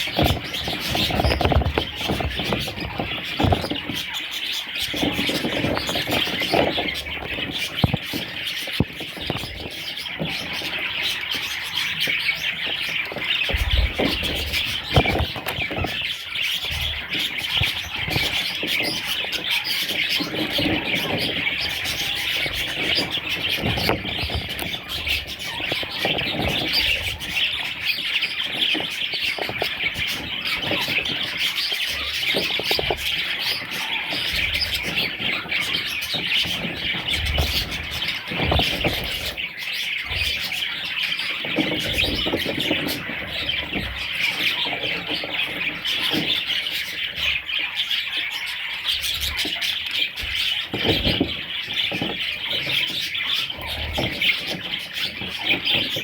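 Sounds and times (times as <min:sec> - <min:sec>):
budgerigars chattering and warbling: 0:00.0 - 0:56.0.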